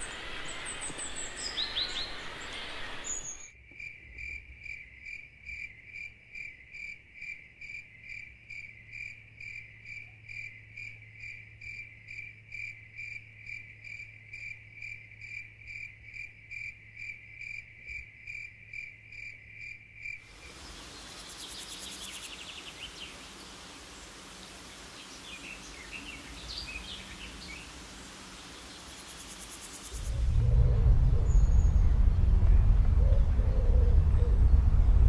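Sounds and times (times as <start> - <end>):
faint chirps: 0.0 - 3.5, 20.2 - 35.0
steady hiss: 0.0 - 3.5, 20.3 - 35.0.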